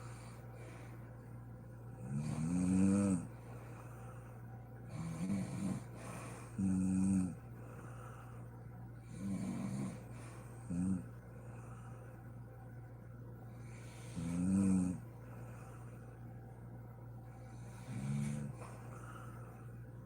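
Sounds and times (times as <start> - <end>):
low hum: 0.0 - 20.0
woman snoring: 2.0 - 3.3, 4.9 - 7.4, 9.1 - 11.1, 13.9 - 15.0, 17.6 - 18.7.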